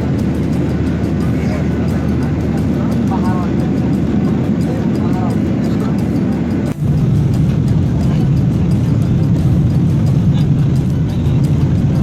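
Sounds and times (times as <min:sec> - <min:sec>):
vehicle rumble: 0:00.0 - 0:12.0.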